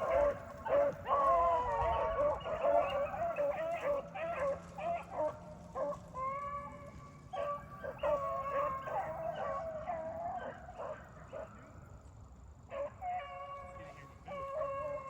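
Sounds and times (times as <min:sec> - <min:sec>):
hounds baying and barking: 0:00.0 - 0:11.9, 0:12.6 - 0:15.0.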